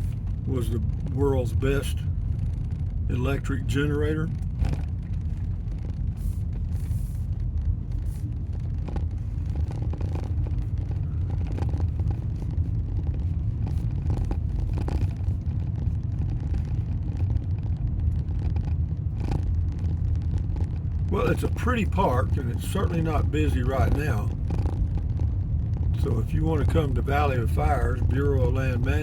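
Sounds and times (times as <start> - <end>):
vehicle engine and road rumble: 0.0 - 29.0.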